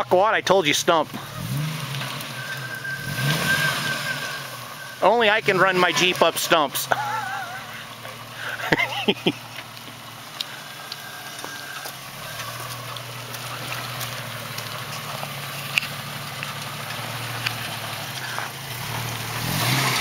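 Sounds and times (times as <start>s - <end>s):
jeep engine running low: 0.0s - 20.0s.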